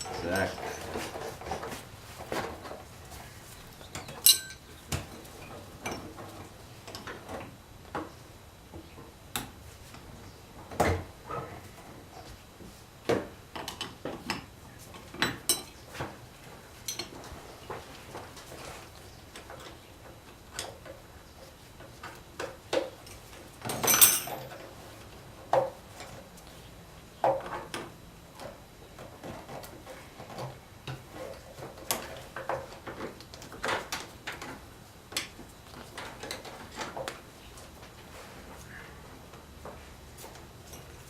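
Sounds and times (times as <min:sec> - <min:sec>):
tools and parts knocking and clinking: 0:00.0 - 0:01.3, 0:03.9 - 0:05.2, 0:15.2 - 0:15.8, 0:16.8 - 0:17.2, 0:22.7 - 0:24.6.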